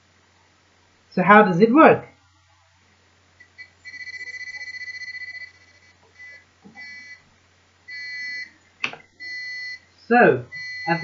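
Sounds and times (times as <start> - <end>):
warbling electronic alarm beep: 3.4 - 7.2, 7.9 - 8.6, 9.2 - 9.8, 10.5 - 11.0.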